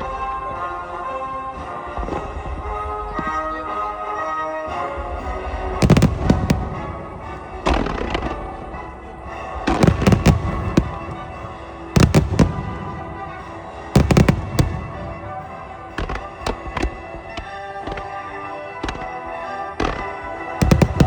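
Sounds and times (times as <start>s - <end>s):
music: 0.0s - 21.0s
fireworks bursting with sharp bangs: 4.7s - 21.0s.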